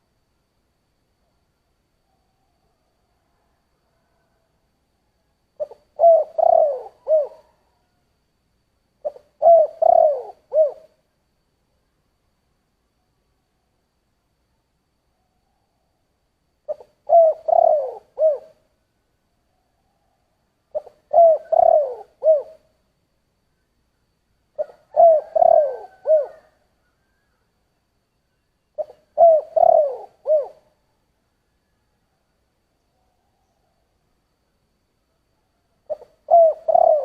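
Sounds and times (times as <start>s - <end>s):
dove cooing: 5.6s - 8.0s, 9.0s - 11.0s, 16.7s - 18.7s, 20.7s - 22.7s, 24.6s - 27.5s, 28.8s - 31.0s, 35.4s - 37.0s.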